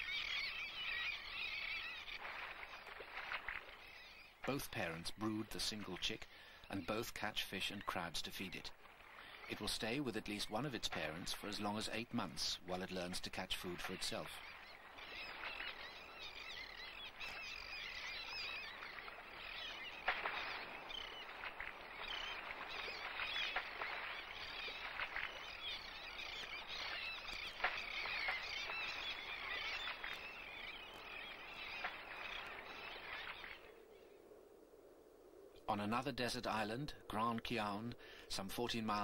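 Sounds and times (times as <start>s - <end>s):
tern colony calling: 9.2s - 33.6s.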